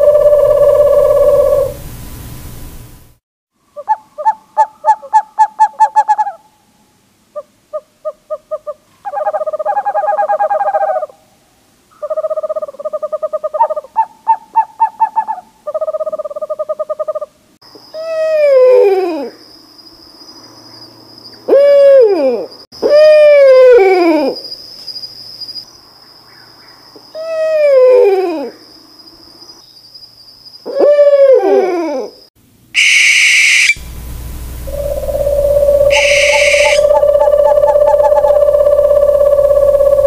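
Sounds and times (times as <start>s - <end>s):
owl hooting and trilling: 0.0s - 1.8s, 3.8s - 6.6s, 7.4s - 11.2s, 12.0s - 17.3s, 17.9s - 19.4s, 21.4s - 24.4s, 27.2s - 28.6s, 30.6s - 32.2s, 32.8s - 33.8s, 34.6s - 40.0s
steady high tone: 32.8s - 40.0s.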